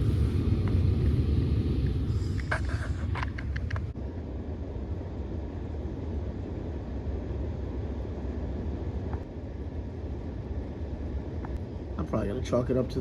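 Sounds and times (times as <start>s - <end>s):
heat pump low rumble: 0.0s - 13.0s.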